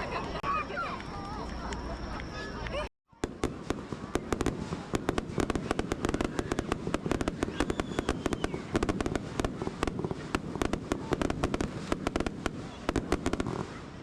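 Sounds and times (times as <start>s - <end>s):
fireworks crackling and popping: 3.1s - 14.0s.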